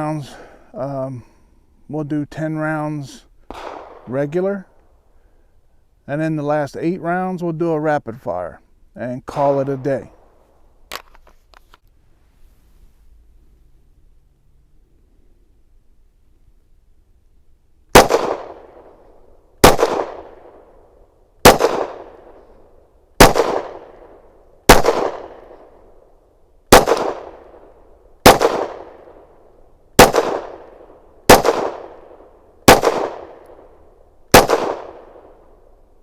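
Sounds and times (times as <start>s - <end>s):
pistol shots echoing: 3.5s - 4.3s, 17.9s - 19.0s, 19.6s - 20.8s, 21.4s - 22.4s, 23.2s - 26.0s, 26.7s - 29.4s, 30.0s - 35.6s.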